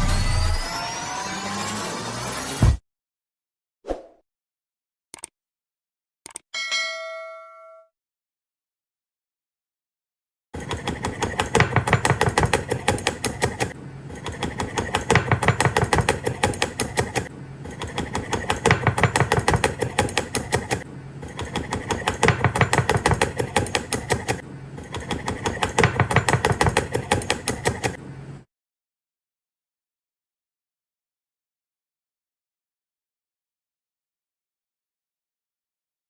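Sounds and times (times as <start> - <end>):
knife chopping on cutting board: 10.7 - 13.8, 14.4 - 17.3, 18.0 - 20.8, 21.4 - 24.4, 25.1 - 28.0.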